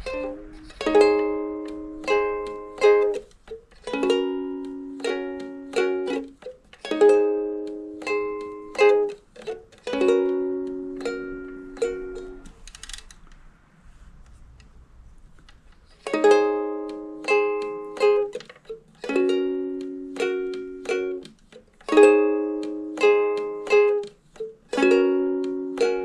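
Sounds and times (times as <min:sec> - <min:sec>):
strummed string instrument chords: 0:00.0 - 0:12.6, 0:16.0 - 0:26.0.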